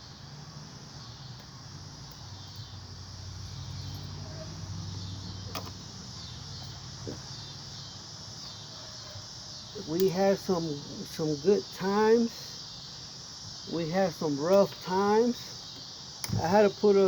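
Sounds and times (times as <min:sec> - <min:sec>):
insects chirring: 0:00.0 - 0:17.0
sharp click: 0:15.8 - 0:16.4.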